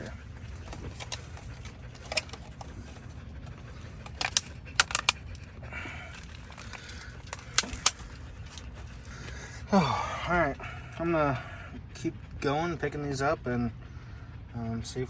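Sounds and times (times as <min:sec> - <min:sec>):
plastic pots clicking and knocking: 0:03.8 - 0:05.4, 0:06.1 - 0:08.6.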